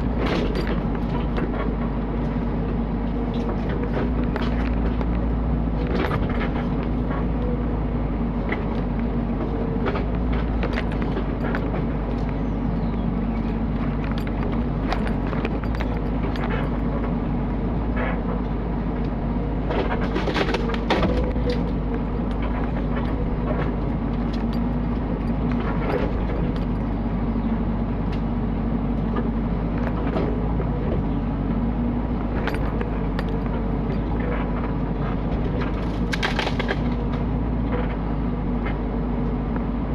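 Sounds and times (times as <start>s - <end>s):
machine clanks and knocks: 0.0s - 2.4s, 3.1s - 7.6s, 8.4s - 12.4s, 13.1s - 17.2s, 19.6s - 27.2s, 32.1s - 38.8s
excavator engine running: 0.0s - 39.9s.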